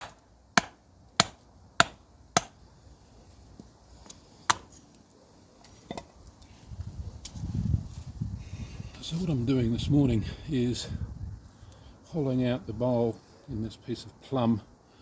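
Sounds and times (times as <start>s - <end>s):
adze chopping wood: 0.0s - 2.6s, 4.5s - 4.7s.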